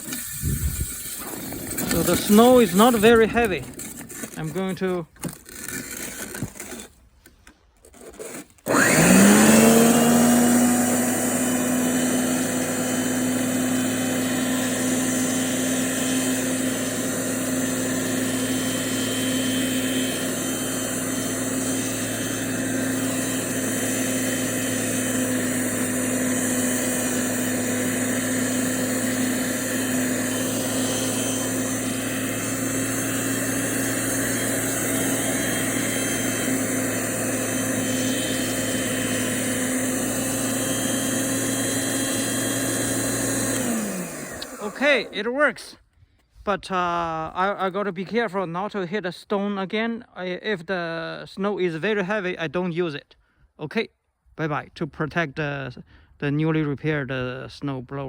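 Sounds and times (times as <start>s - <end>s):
snow blower motor whining: 0.0s - 45.7s.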